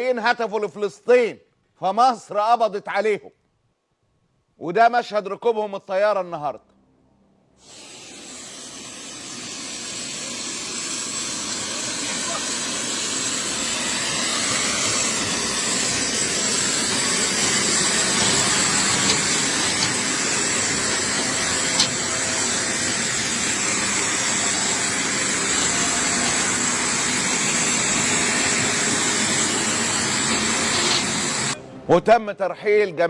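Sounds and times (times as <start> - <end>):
jet engines running: 7.7 - 31.6.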